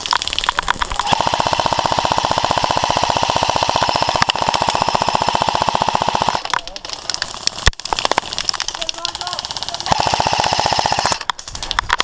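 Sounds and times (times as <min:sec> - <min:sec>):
airsoft gun firing: 0:01.0 - 0:06.5, 0:09.1 - 0:11.3.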